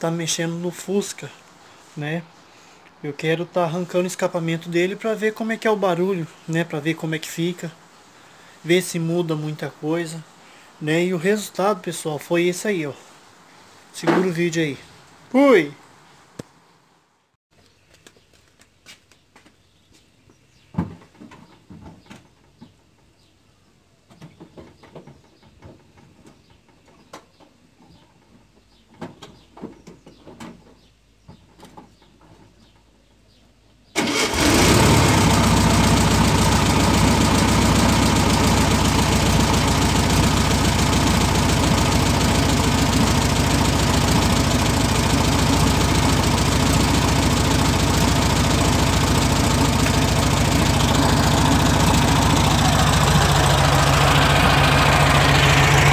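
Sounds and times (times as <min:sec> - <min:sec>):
car engine through bare exhaust: 0:34.0 - 0:55.9.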